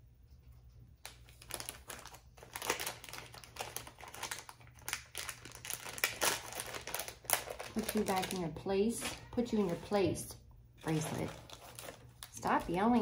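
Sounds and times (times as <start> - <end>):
packaging crinkling: 1.0 - 10.0, 10.8 - 13.0.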